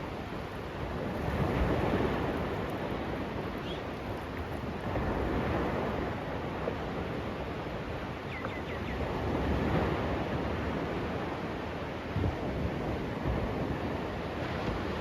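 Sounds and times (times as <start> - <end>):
sea waves washing ashore: 0.0 - 15.0
wind on microphone: 0.0 - 15.0
bird chirping: 3.6 - 3.8.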